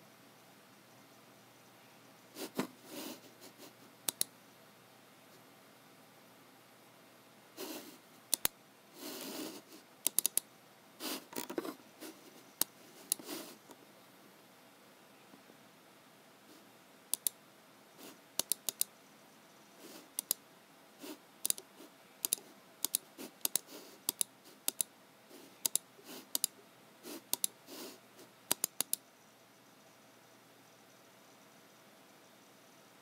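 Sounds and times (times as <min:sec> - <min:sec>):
mouse clicking: 0:04.0 - 0:04.3, 0:07.6 - 0:10.5, 0:12.5 - 0:13.8, 0:17.1 - 0:17.4, 0:18.0 - 0:18.9, 0:20.0 - 0:20.4, 0:21.4 - 0:24.9, 0:25.5 - 0:26.6, 0:27.2 - 0:27.9, 0:28.5 - 0:29.0.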